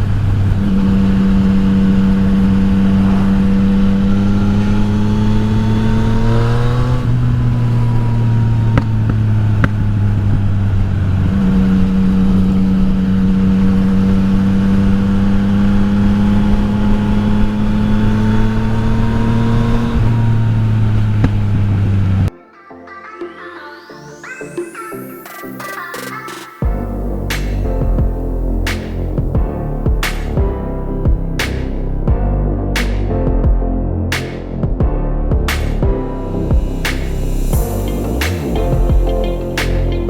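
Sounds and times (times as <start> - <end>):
motorcycle engine accelerating: 0.0 - 22.3
wind noise: 0.0 - 22.3.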